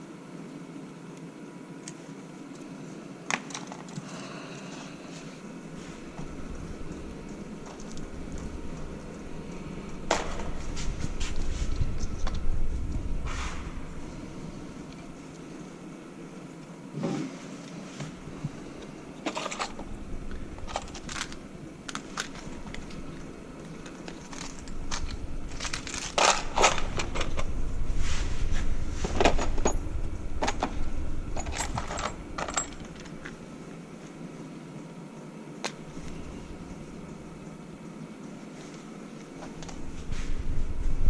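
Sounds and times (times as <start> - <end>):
low rumble of handling: 5.2 - 34.9, 35.7 - 41.0
metal tools clinking: 31.3 - 33.2.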